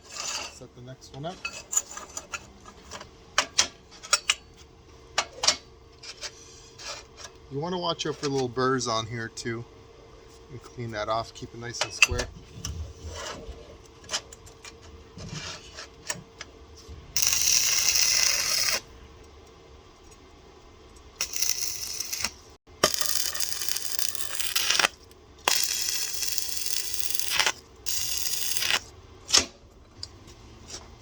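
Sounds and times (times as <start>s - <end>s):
crackling welding arc: 17.2s - 18.8s, 21.2s - 28.9s.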